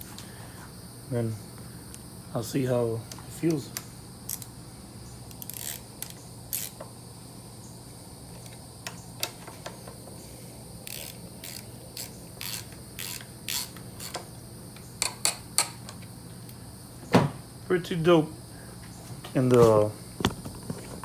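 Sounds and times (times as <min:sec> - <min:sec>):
wrench clicking on metal bolts: 0:05.3 - 0:06.8, 0:10.9 - 0:14.2, 0:15.0 - 0:16.0.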